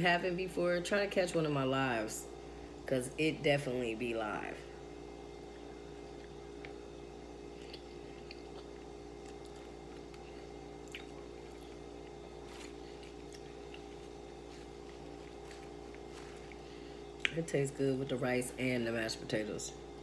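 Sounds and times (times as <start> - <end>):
low electrical hum: 0.0 - 20.0
close-up chewing: 5.4 - 17.5.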